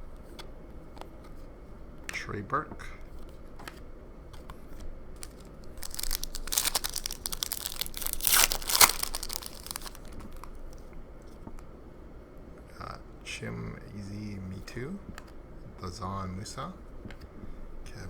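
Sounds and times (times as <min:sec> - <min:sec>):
wrapper tearing and crinkling: 0:05.2 - 0:10.8.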